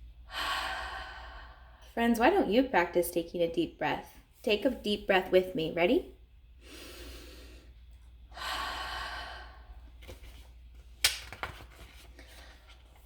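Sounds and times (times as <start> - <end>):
woman breathing deeply: 0.2 - 1.9, 6.6 - 10.0.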